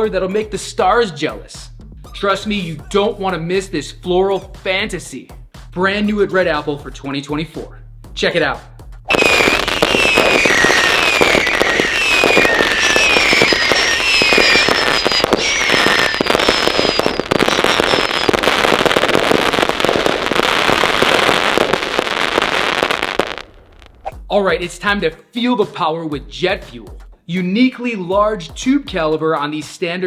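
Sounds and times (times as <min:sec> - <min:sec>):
falling firework whistles: 0:09.1 - 0:24.1
firework barrage with bursts: 0:09.1 - 0:24.2.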